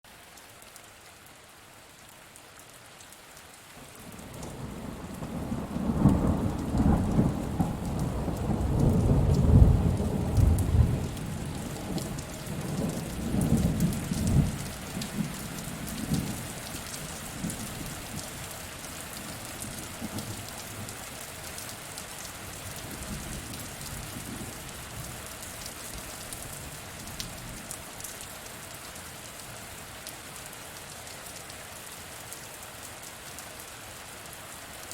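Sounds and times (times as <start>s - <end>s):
steady rain falling: 0.0s - 34.9s
thunder rumble: 4.4s - 16.5s.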